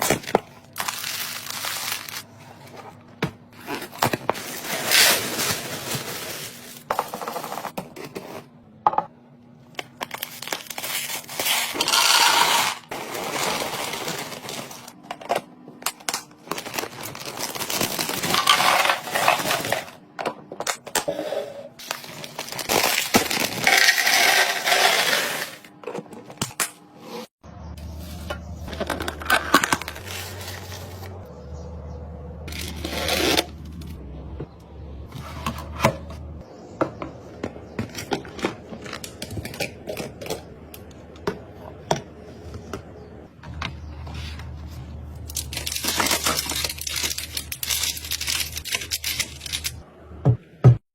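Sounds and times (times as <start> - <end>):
packaging rustling: 0.0 - 2.9, 10.0 - 15.0, 16.4 - 19.9, 21.8 - 24.9, 45.2 - 49.8
containers clicking and clinking: 11.4 - 12.9.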